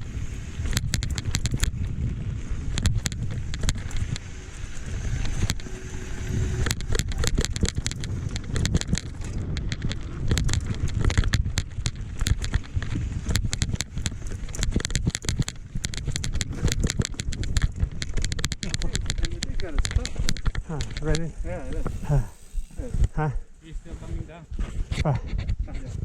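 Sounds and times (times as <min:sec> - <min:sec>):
bike rattling on dirt trail: 0:00.0 - 0:25.9
wind on microphone: 0:00.0 - 0:26.0.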